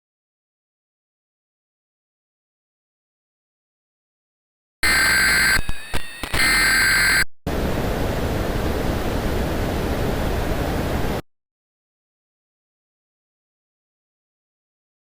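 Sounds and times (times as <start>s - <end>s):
loud electronic tone: 4.8s - 7.3s.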